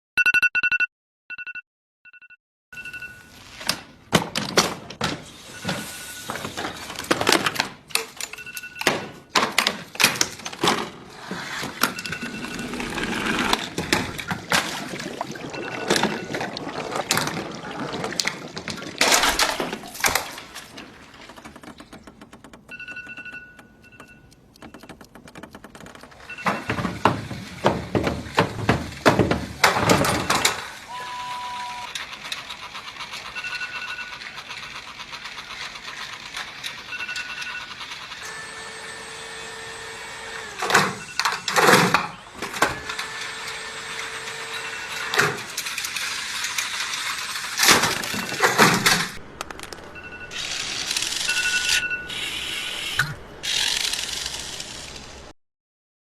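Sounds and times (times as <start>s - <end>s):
alarm clock beeping: 11.9s - 13.5s, 22.7s - 25.0s, 33.2s - 34.4s, 36.9s - 38.9s, 50.0s - 52.4s
clattering and banging knocks: 18.1s - 30.6s.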